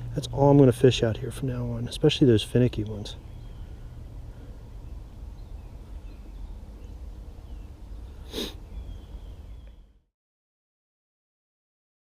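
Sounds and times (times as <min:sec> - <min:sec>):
breathy snort: 0:08.3 - 0:08.6.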